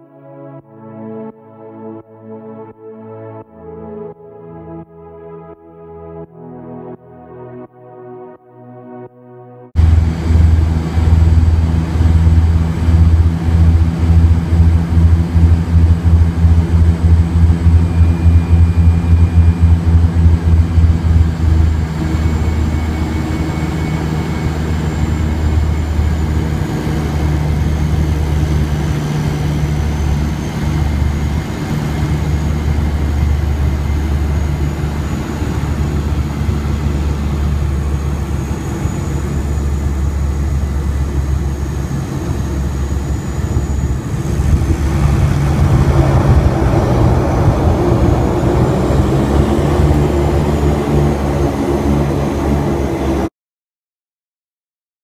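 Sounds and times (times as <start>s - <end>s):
loud low engine drone: 9.8s - 53.3s.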